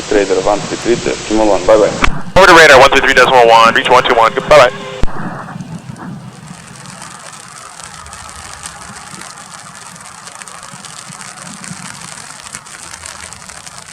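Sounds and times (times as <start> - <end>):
distant jet engine rumble: 0.0 - 13.9
rain hissing: 0.0 - 13.9.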